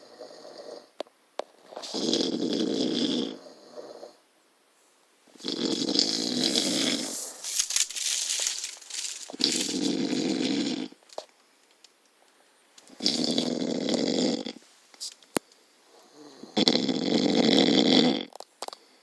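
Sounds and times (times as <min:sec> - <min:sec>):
person snoring: 0:05.4 - 0:07.4, 0:15.9 - 0:18.3.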